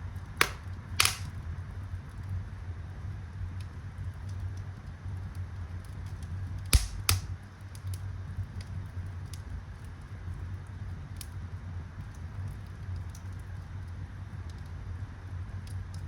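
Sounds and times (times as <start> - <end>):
loud fire snaps: 0.2 - 1.4, 3.5 - 10.0, 10.6 - 11.4, 12.0 - 14.7, 15.6 - 16.0
wood fire crackling: 0.2 - 1.4, 3.6 - 14.6, 15.5 - 16.0.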